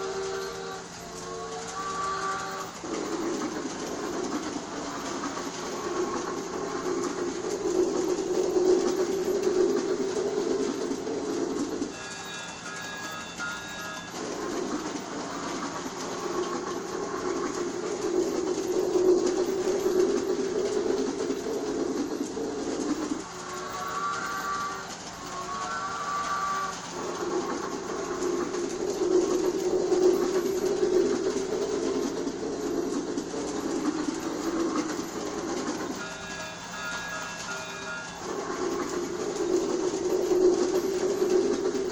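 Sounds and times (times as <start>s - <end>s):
toy train whistle toots: 0.0s - 2.8s, 11.9s - 14.2s, 23.4s - 26.9s, 36.0s - 38.2s
toy train motor and wheels rumbling: 0.0s - 41.9s.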